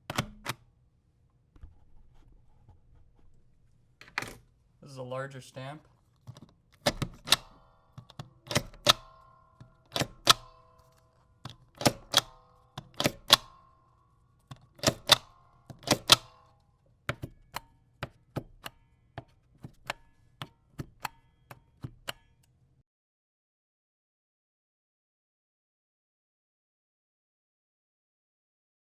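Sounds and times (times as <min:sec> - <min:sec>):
small stamper clicking: 0:06.2 - 0:13.8, 0:14.4 - 0:22.6.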